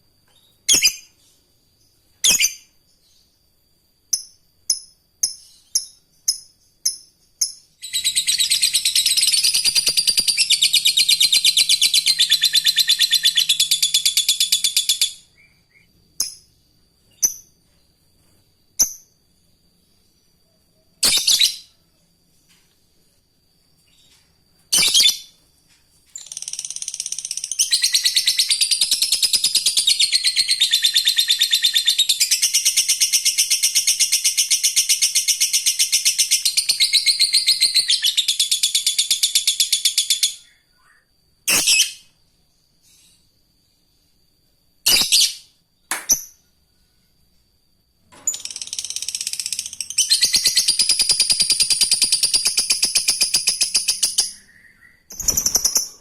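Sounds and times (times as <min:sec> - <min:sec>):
bird rapid chattering trill: 0:07.8 - 0:15.2, 0:48.4 - 0:56.0.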